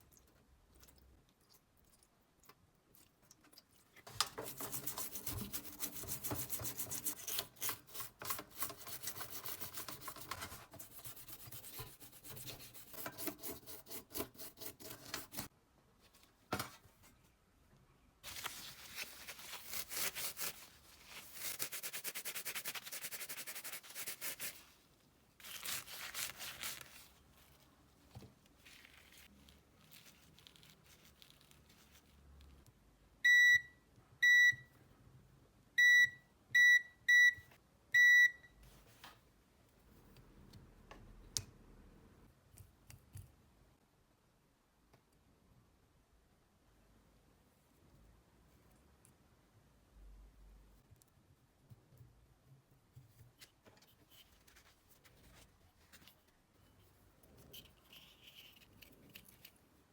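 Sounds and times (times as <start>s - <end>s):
rapid rubbing strokes: 19.0s - 24.8s.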